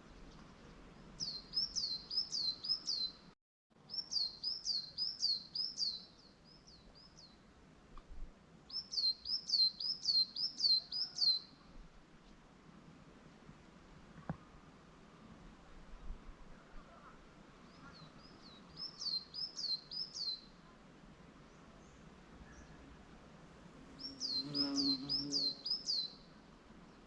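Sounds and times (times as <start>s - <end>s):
songbird singing down-slurred notes: 0.0s - 7.5s, 8.7s - 11.7s, 16.5s - 20.8s, 21.4s - 23.0s, 23.9s - 27.0s
faint outdoor background: 0.0s - 27.0s.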